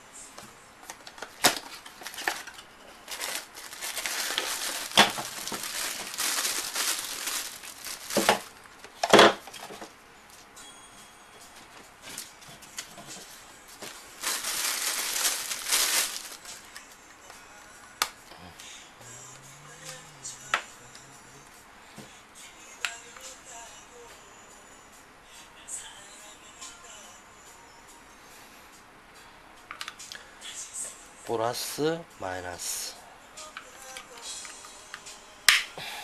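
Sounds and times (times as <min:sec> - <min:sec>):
crinkling and rustling: 0:00.8 - 0:10.0, 0:12.0 - 0:16.8.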